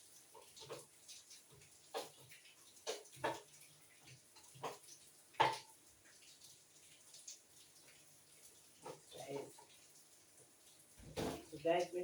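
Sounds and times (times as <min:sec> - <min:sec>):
wet clicks and knocks: 0:00.3 - 0:06.3, 0:08.8 - 0:09.8.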